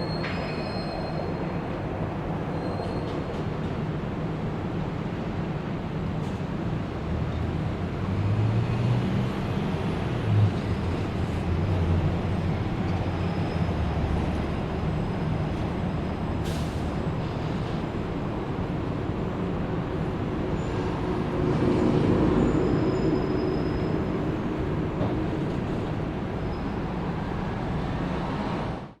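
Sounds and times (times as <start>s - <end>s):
traffic rumble: 3.1s - 29.0s
loud vehicle passing: 20.7s - 26.3s.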